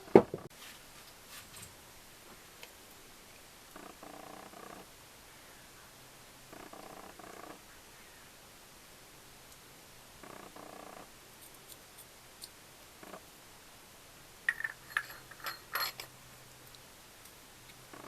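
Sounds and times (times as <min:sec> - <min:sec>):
small metal parts clinking: 0:14.5 - 0:16.1.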